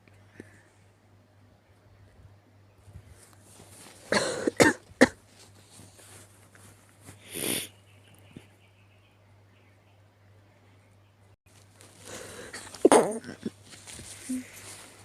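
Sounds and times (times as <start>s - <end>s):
person coughing: 4.1s - 5.2s, 12.2s - 13.6s.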